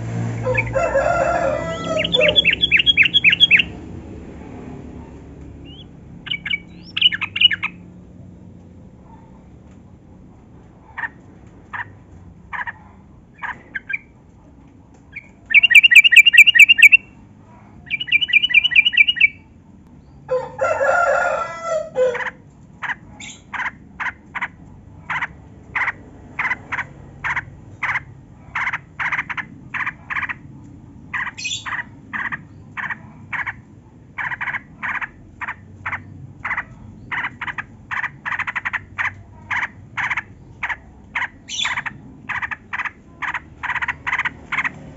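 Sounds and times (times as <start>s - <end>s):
bird trills and chirps: 0.4s - 3.8s, 5.6s - 7.8s, 10.9s - 14.2s, 15.1s - 17.2s, 17.8s - 20.2s, 22.2s - 44.9s.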